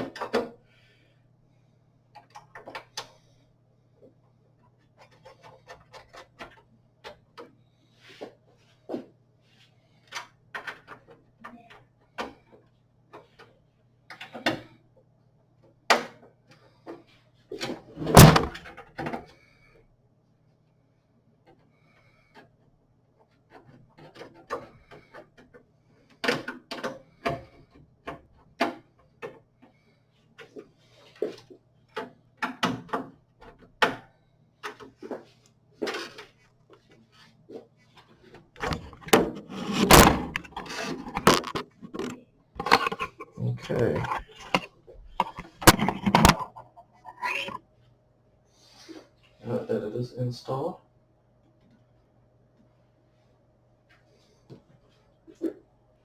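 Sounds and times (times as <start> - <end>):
loud metal clunk: 18.0 - 18.6, 38.6 - 43.1
metal case parts clicking and knocking: 18.0 - 18.6, 38.6 - 47.6.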